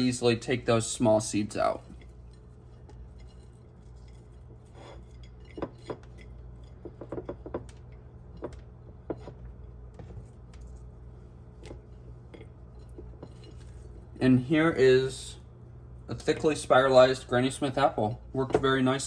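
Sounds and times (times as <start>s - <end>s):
low steady hum: 0.0s - 19.0s
kitchenware clinks and taps: 5.4s - 9.4s.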